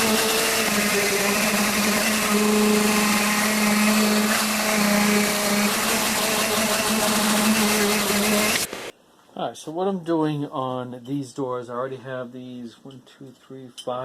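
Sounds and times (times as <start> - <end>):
electric motor humming: 0.0 - 8.9.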